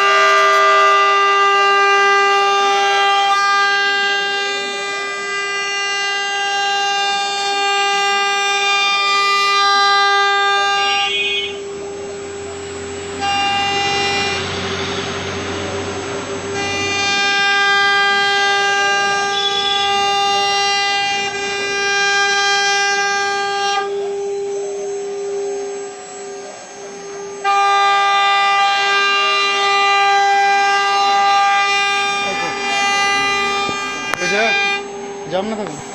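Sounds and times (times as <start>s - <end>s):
router spindle whine: 0.0s - 35.9s.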